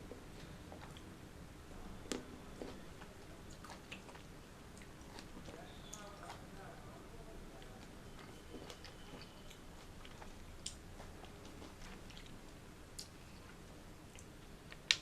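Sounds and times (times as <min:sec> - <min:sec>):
chewing fruit mouth clicks: 0:07.6 - 0:12.4.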